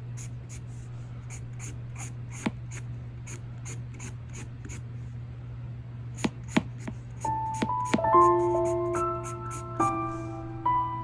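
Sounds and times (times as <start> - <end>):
drawing tool scratching on paper: 0.0 - 4.8, 6.2 - 9.9
steady low hum: 0.0 - 11.0.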